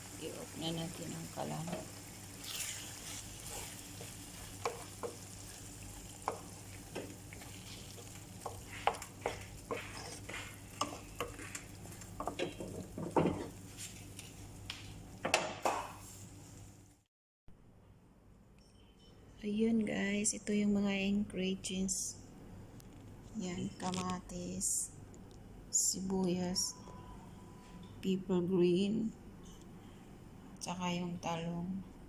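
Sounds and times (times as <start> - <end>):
faint sizzle: 0.0 - 15.2
spatula scraping a frying pan: 2.4 - 13.5.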